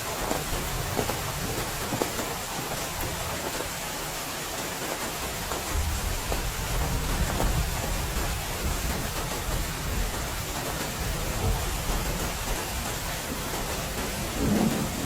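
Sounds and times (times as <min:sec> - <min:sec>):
heavy rain falling: 0:00.0 - 0:15.0
low rumble of thunder: 0:05.7 - 0:15.0.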